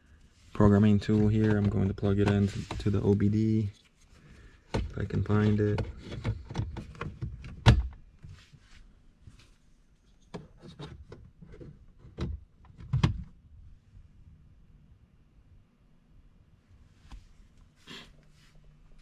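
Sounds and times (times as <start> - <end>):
hard objects knocking and clicking: 4.7 - 8.0.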